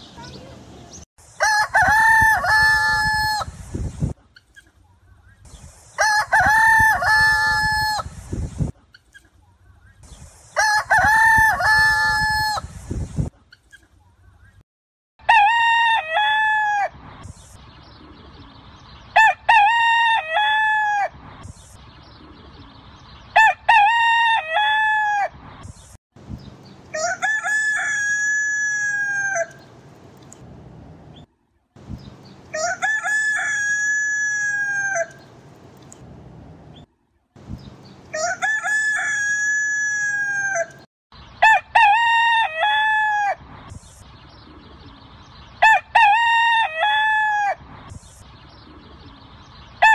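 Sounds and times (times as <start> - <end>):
rooster crowing: 1.4 - 3.5, 26.9 - 29.6, 32.5 - 35.2, 38.1 - 43.4.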